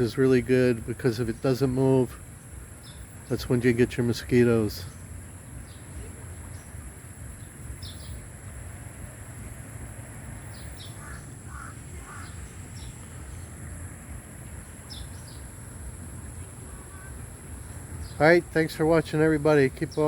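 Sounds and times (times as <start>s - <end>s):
birds chirping: 0.0s - 20.0s
bird short calls: 10.6s - 13.5s.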